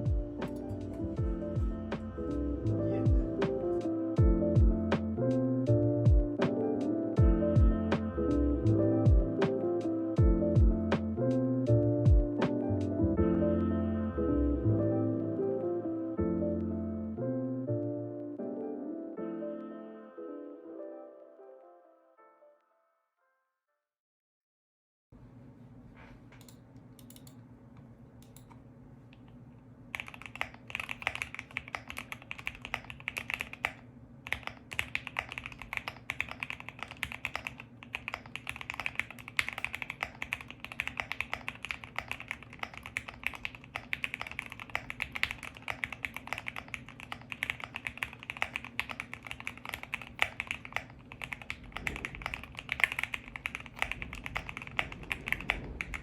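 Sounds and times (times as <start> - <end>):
low steady hum: 0.0 - 18.1
mechanical keyboard typing: 26.4 - 27.4, 29.9 - 56.0.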